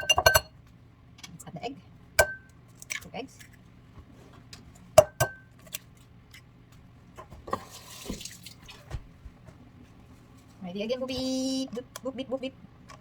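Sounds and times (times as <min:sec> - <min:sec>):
bowl ringing: 0:00.0 - 0:00.5.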